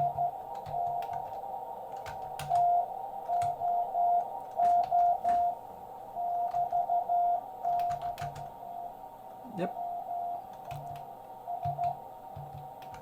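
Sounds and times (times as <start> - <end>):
morse code beeps: 0.0 - 1.2, 2.4 - 5.6, 6.2 - 8.9, 9.7 - 12.0
shortwave radio hiss: 0.0 - 7.7, 8.5 - 12.9.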